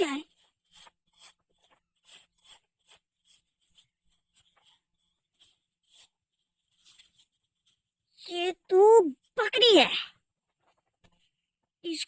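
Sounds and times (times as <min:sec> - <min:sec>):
plastic toys rustling and scraping: 0:00.0 - 0:11.4.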